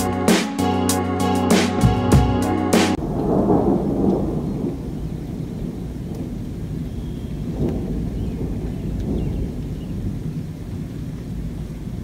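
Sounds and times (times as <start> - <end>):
rolling thunder: 2.9 - 12.0.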